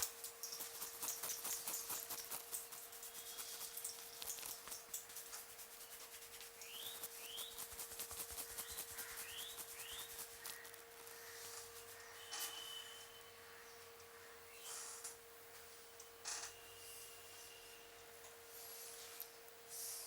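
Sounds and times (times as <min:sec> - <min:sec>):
hands rubbing hair and scalp: 0:00.5 - 0:12.0.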